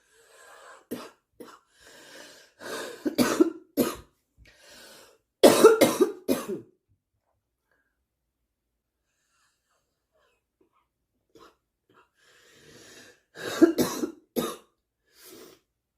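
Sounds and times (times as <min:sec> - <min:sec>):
girl coughing: 0:03.0 - 0:04.1, 0:05.4 - 0:06.6, 0:13.4 - 0:14.7.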